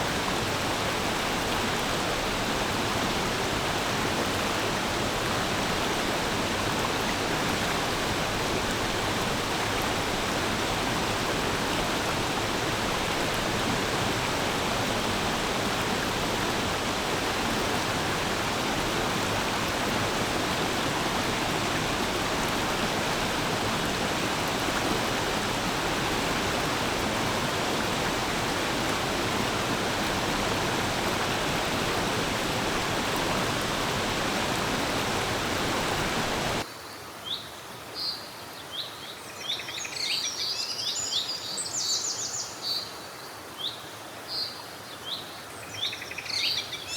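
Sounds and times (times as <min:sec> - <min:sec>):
stream flowing over rocks: 0:00.0 - 0:36.7.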